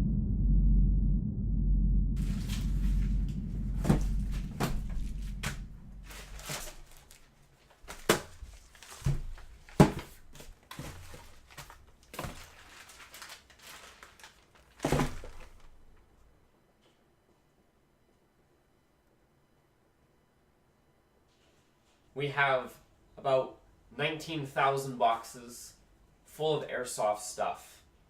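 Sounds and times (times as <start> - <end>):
low rumble: 0.0 - 7.0
knocks and thuds: 2.2 - 6.7.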